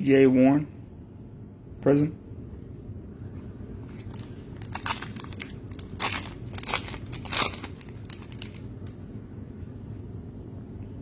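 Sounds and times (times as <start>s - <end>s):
card packs crinkling: 3.8s - 9.0s.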